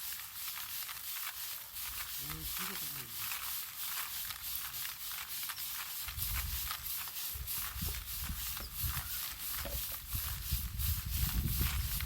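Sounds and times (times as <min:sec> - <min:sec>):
dry stalks being beaten: 0:00.0 - 0:12.0.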